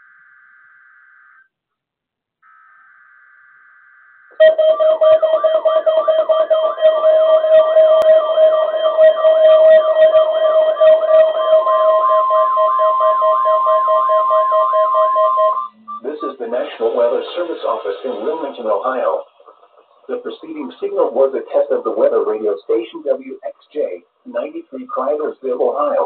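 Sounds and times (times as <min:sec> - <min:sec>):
steady alarm tone: 0:00.0 - 0:01.5, 0:02.4 - 0:20.2
warbling siren alarm: 0:00.0 - 0:01.5, 0:02.4 - 0:18.6
coded data tone bursts: 0:02.4 - 0:21.0.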